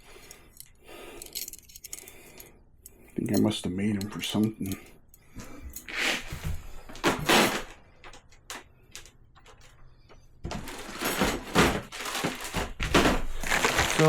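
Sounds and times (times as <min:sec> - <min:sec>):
small parts scraping and knocking: 0:00.1 - 0:06.0
packaging rustling and clattering: 0:06.9 - 0:14.0.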